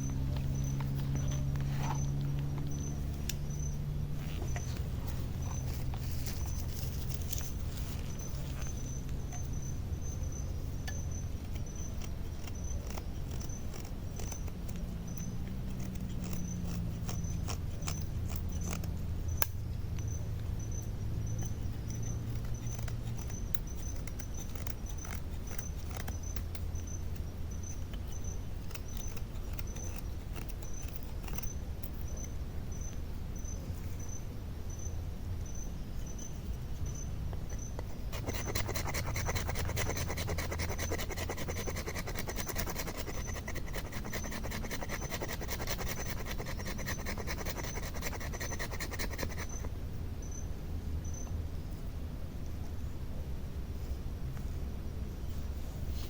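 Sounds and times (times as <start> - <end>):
light clicks and scrapes: 0.0 - 34.2
constant low rumble: 0.0 - 56.0
cricket chirping: 0.0 - 56.0.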